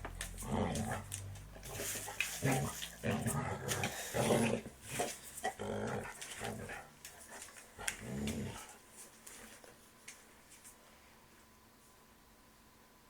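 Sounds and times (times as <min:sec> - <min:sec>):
dog growling: 0:00.4 - 0:06.9, 0:07.8 - 0:08.8.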